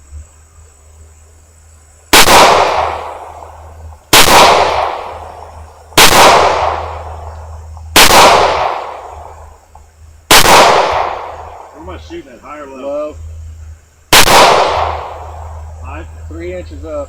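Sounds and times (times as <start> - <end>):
handgun shots echoing: 4.1 - 5.2, 6.0 - 7.2, 8.0 - 9.2, 10.3 - 11.4, 14.1 - 15.2.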